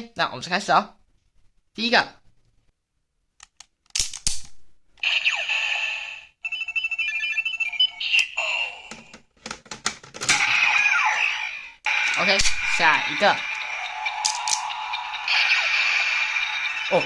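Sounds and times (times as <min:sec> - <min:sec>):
electronic toy sound effects: 0:05.0 - 0:09.1, 0:10.3 - 0:17.0
electronic beeps and chimes: 0:11.9 - 0:17.0.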